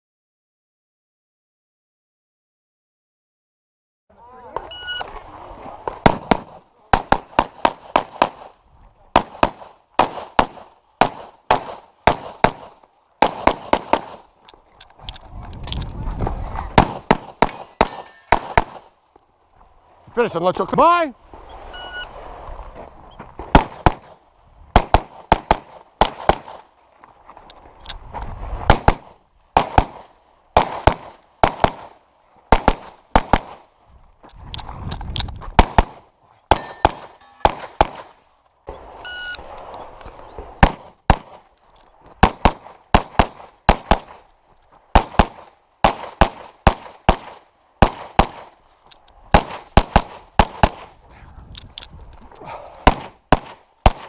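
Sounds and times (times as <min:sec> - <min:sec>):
handgun shots: 0:16.8 - 0:18.9, 0:35.6 - 0:38.1.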